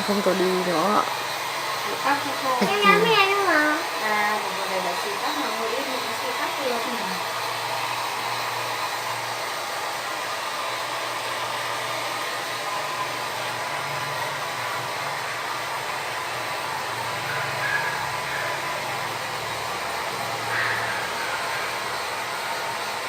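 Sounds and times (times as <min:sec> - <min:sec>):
hair dryer blowing: 0:00.0 - 0:23.0.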